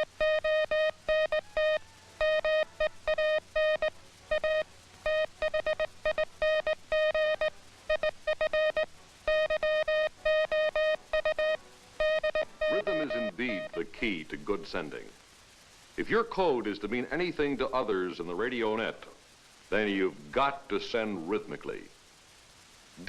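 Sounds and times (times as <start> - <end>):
morse code tone: 0.0 - 13.9.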